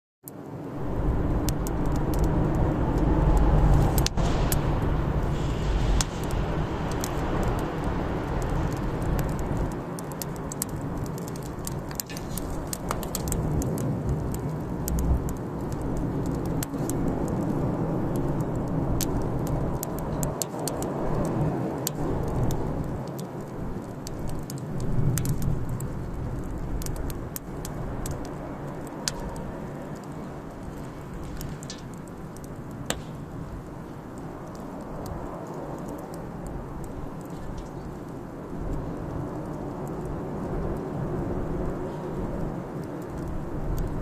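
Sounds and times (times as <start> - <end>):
bonfire crackling and popping: 0.3 - 44.0
low rumble: 0.7 - 11.8, 12.4 - 20.4.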